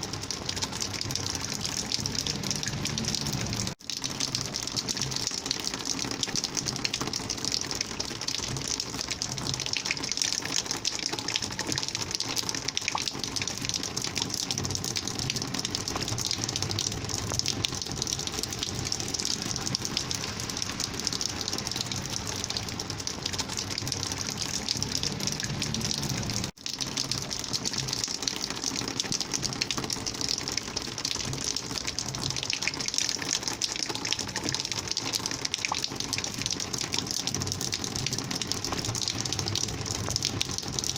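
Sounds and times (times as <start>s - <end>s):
rainwater gushing: 0.0s - 40.9s.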